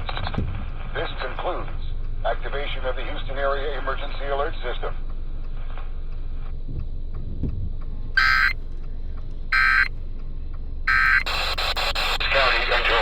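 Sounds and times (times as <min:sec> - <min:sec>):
digital data screech bursts: 0:08.2 - 0:08.6, 0:09.6 - 0:09.9, 0:10.9 - 0:12.2.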